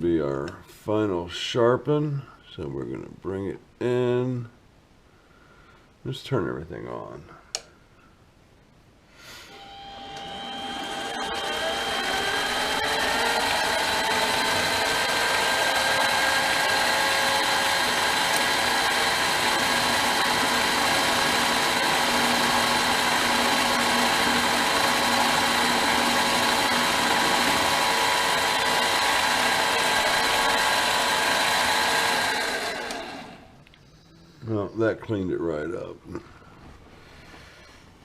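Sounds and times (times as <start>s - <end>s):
grinder and lathe whining: 9.5s - 33.6s.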